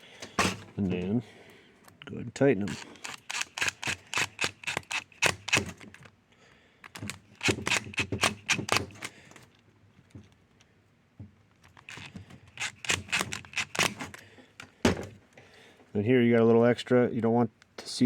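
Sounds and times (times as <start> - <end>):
screwdriver clicking and scraping: 0.4 - 0.7, 2.6 - 6.1, 6.8 - 9.2, 11.6 - 14.2.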